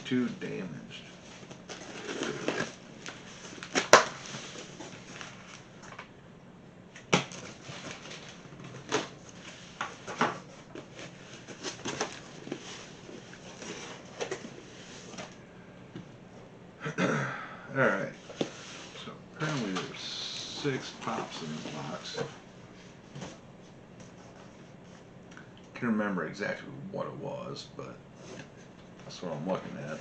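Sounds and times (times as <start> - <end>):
cardboard rustling and scraping: 1.2 - 6.0, 7.3 - 15.4, 18.2 - 25.0.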